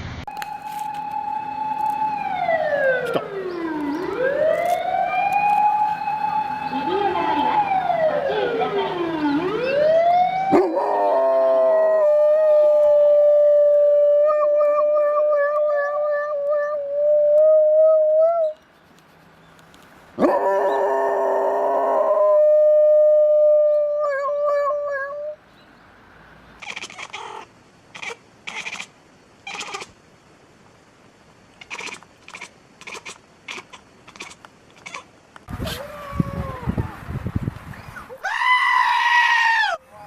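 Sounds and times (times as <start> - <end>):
dog howling: 10.5 - 18.6, 20.2 - 25.4, 35.6 - 37.0.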